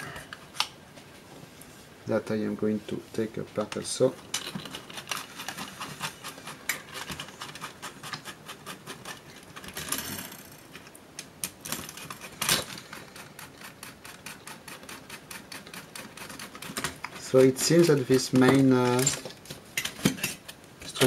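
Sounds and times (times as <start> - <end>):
tools and metal parts clicking: 16.3 - 20.6.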